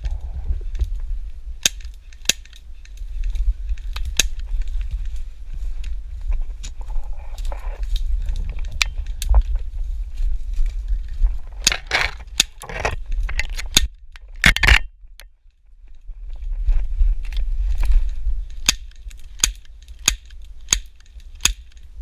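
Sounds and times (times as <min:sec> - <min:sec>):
dry vegetation crunching: 0:00.0 - 0:22.0
wind rumble on microphone: 0:00.0 - 0:22.0
sharp clicks: 0:01.6 - 0:05.2, 0:18.4 - 0:21.9.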